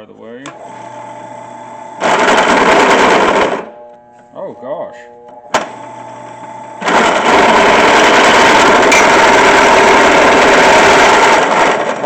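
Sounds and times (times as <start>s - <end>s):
drill press motor running: 0.5s - 4.2s, 5.5s - 12.0s
drill bit cutting steel pipe: 5.7s - 11.9s.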